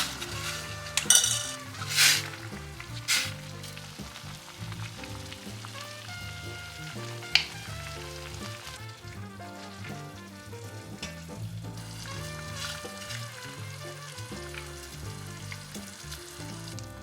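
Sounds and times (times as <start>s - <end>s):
utensil scraping pan: 0.0s - 4.8s
food sizzling in a pan: 0.0s - 17.0s.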